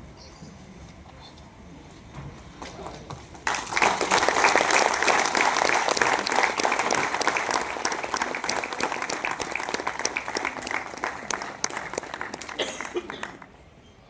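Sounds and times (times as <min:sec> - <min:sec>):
audience applauding: 0:03.1 - 0:13.6.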